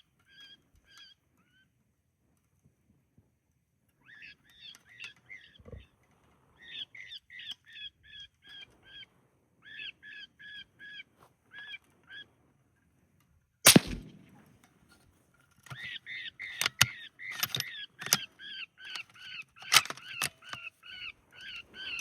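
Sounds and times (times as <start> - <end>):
gunshot echoing: 13.7 - 14.5.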